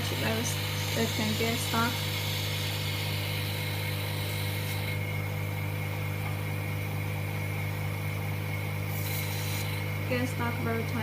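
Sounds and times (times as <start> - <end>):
high hiss: 0.0 - 5.0
vacuum pump humming: 0.0 - 11.0.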